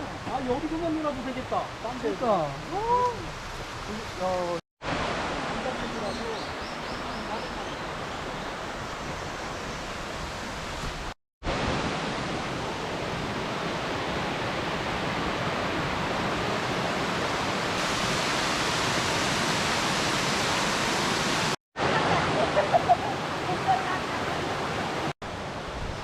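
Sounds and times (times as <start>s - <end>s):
waterfall rushing: 11.4s - 25.2s.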